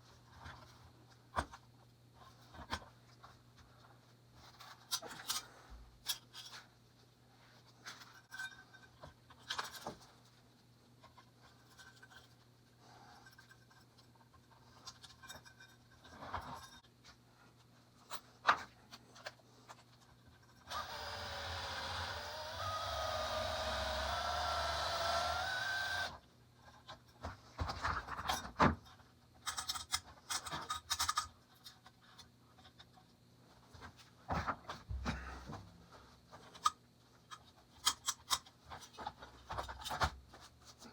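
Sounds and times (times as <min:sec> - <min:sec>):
scrapes and clicks of hand work: 0:00.0 - 0:20.7, 0:26.6 - 0:40.9
small power tool whirring: 0:20.7 - 0:26.2
small parts scraping and clicking: 0:29.4 - 0:33.2, 0:36.4 - 0:40.9.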